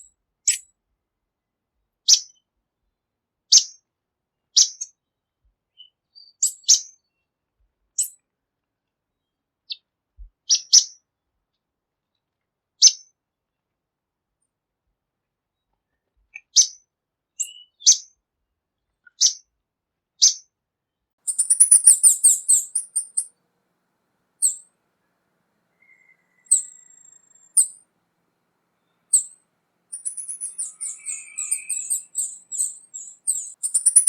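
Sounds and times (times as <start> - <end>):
bird calling and singing: 21.3 - 23.3, 24.4 - 24.7, 25.7 - 27.8, 28.8 - 34.0.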